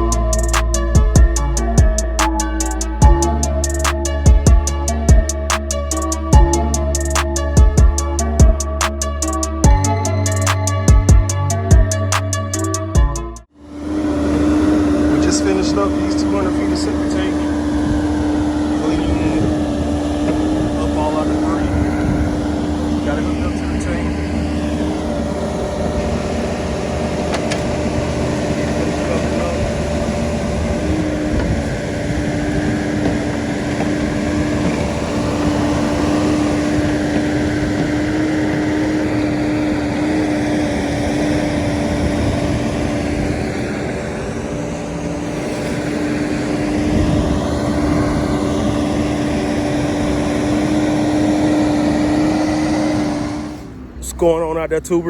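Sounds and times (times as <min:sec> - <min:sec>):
engine humming: 0:00.0 - 0:55.0.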